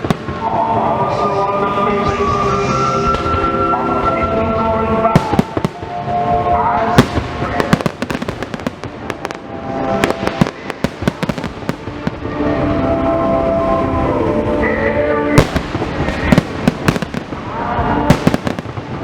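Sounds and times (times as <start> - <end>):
fireworks bangs and crackles: 0.0 - 12.9, 15.3 - 19.0
music with held tones: 9.0 - 18.8.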